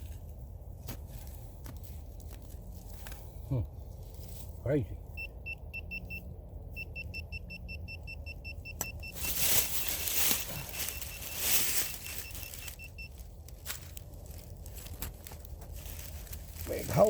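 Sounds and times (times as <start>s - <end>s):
rustling and scraping of digging: 0.0s - 5.2s, 8.8s - 17.0s
metal detector beeping: 5.2s - 13.2s.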